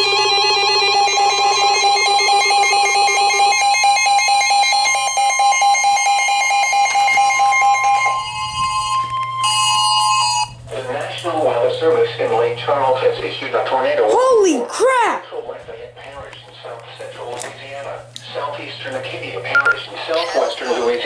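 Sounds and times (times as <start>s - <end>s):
fluttering electronic alarm tone: 0.0s - 10.6s.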